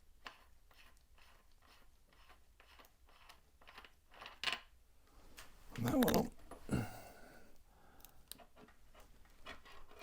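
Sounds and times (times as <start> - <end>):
metal scraping and rubbing: 8.6 - 10.0.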